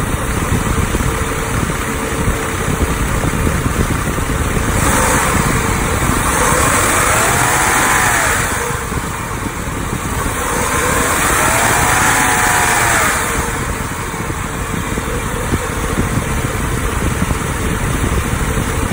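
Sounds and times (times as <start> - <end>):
car engine revving: 0.0 - 18.9
steady engine hum: 0.0 - 18.9.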